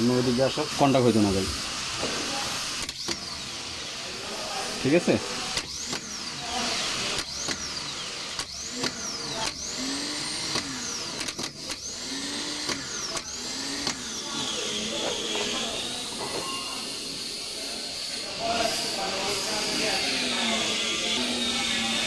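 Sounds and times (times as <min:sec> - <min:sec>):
starter motor whine: 0:00.0 - 0:22.0.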